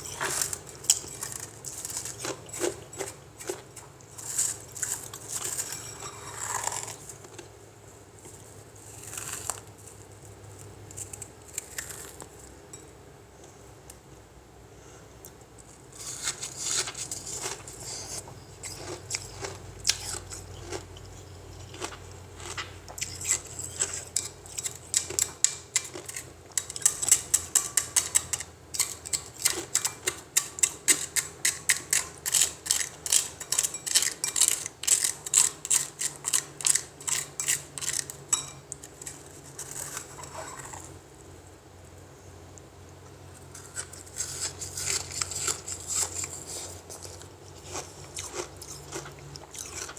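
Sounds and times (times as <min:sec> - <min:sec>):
ice being chewed: 0:00.0 - 0:07.5, 0:08.2 - 0:12.5, 0:16.0 - 0:41.0, 0:43.0 - 0:49.9.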